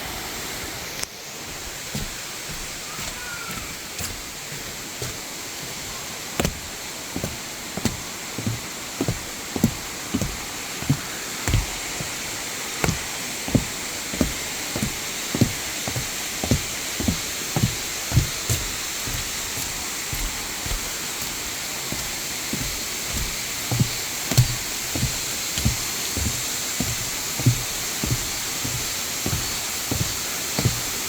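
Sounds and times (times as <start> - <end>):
rain and falling water hiss: 0.0 - 31.0
low regular thuds: 1.5 - 31.0.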